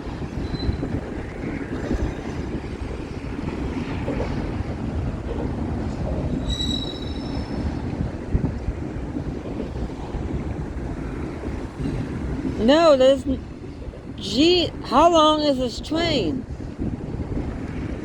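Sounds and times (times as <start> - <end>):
train wheels rumbling on rail: 0.0 - 12.6.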